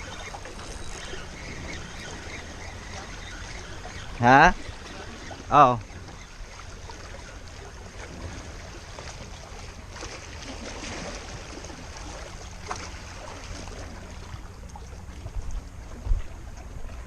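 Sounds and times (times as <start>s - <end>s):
water sloshing and lapping: 0.0s - 17.0s
wind rumble on microphone: 10.3s - 17.0s.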